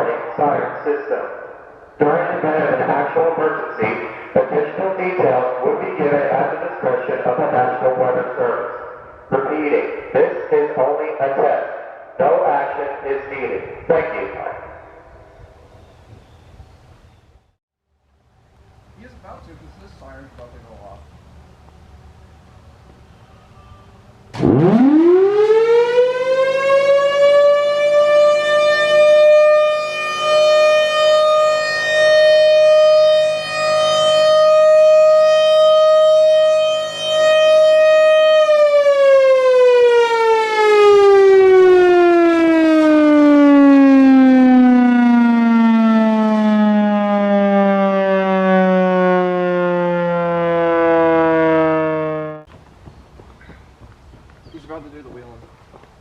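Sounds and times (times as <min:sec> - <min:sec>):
mechanical warning siren tone: 0:22.1 - 0:52.5.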